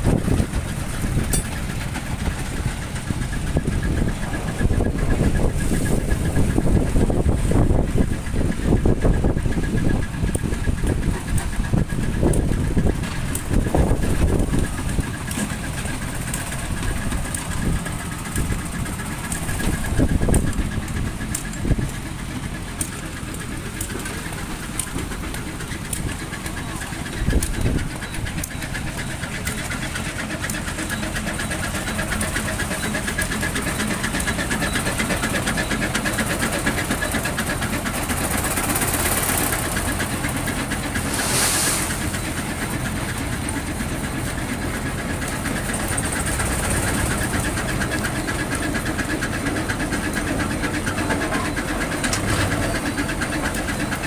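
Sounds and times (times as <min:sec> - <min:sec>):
machine engine clattering: 0:00.0 - 0:54.0
brief hiss: 0:41.0 - 0:42.1.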